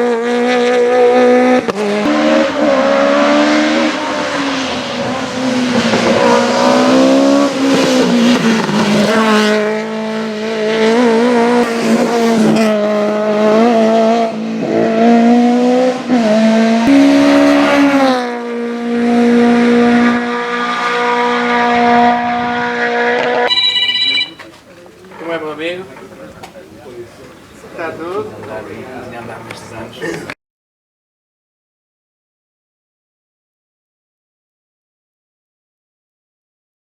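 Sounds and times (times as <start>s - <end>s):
rally car engine at high revs: 0.0s - 23.5s.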